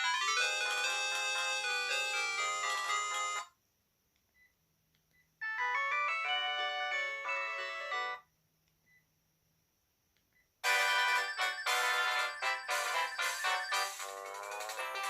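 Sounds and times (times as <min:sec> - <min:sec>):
polyphonic ringtone melodies: 0:00.0 - 0:03.5, 0:05.4 - 0:08.2, 0:10.6 - 0:15.0.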